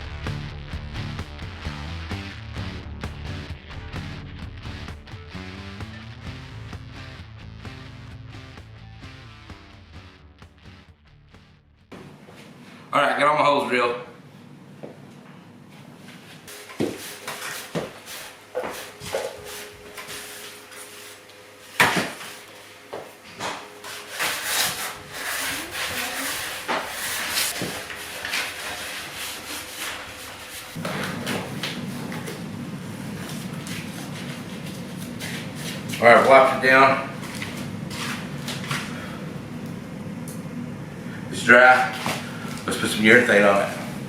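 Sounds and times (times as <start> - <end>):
cloth rubbing on wood: 15.9 - 32.2, 32.8 - 38.7.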